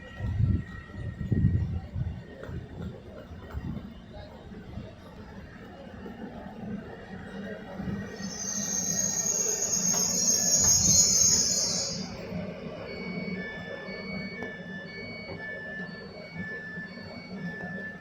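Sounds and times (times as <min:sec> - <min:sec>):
train high-pitched squeal: 0:05.7 - 0:18.0
two-tone electronic warning beeps: 0:07.0 - 0:18.0.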